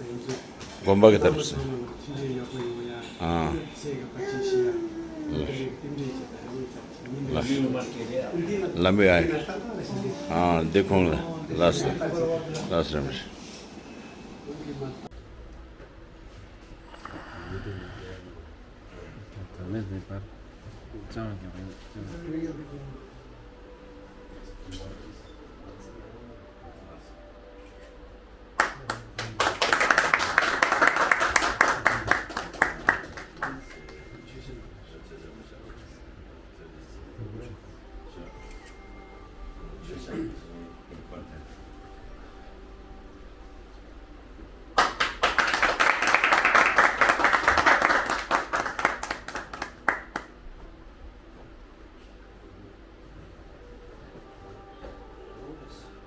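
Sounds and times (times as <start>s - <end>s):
group hand clapping: 28.6s - 34.1s, 44.8s - 50.4s.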